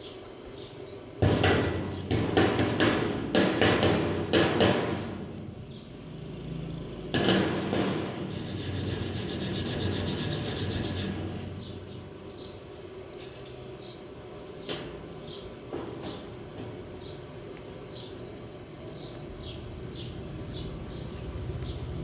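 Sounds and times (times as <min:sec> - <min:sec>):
rasping scraping noise: 0:08.3 - 0:11.6.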